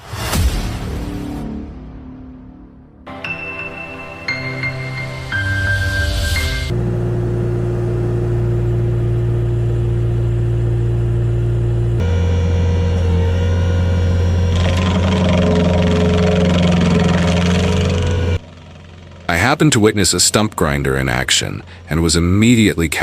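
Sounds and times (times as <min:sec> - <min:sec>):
heavy machine engine humming: 0:06.6 - 0:23.0
lower-pitched machine engine: 0:06.7 - 0:23.0
rough grinding noise: 0:06.8 - 0:23.0.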